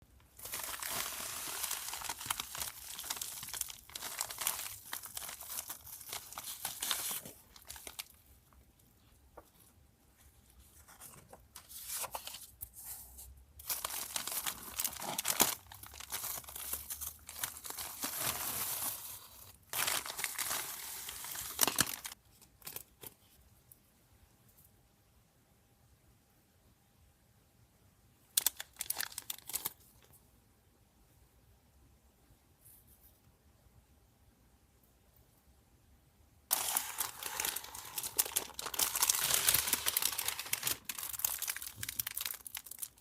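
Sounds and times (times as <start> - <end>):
packaging crinkling and tearing: 0.4 - 8.2, 13.6 - 23.0, 28.4 - 30.1, 36.5 - 43.0.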